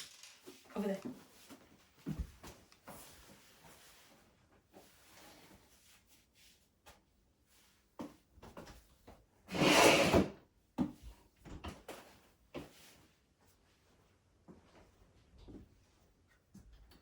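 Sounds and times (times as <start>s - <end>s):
loud scraping slide: 9.5s - 10.3s.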